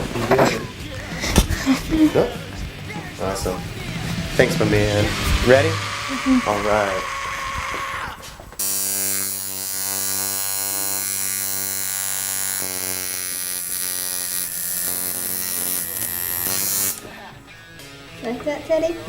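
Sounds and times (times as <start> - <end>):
tattoo machine buzzing: 4.6 - 7.9, 8.6 - 17.1.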